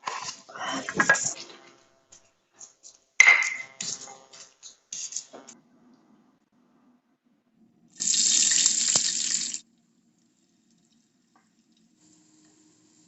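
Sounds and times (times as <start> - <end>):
running water burst: 8.0 - 9.6.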